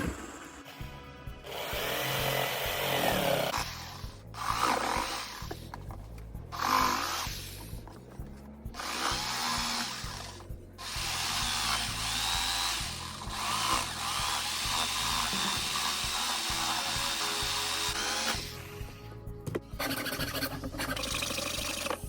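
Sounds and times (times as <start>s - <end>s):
background music: 0.0s - 22.0s
drill press boring into wood: 8.8s - 18.5s.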